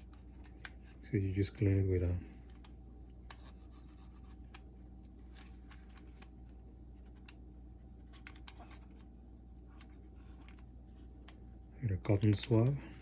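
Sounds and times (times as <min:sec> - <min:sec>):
light clicks handling cassette player parts: 0:01.6 - 0:03.4, 0:04.4 - 0:07.4, 0:08.1 - 0:09.1, 0:09.7 - 0:11.4.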